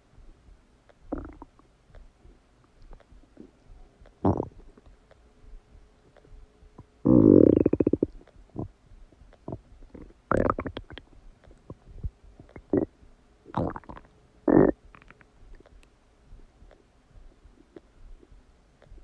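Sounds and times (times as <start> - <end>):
stomach gurgling: 1.1 - 1.7, 2.9 - 4.9, 6.8 - 12.9, 13.5 - 15.8.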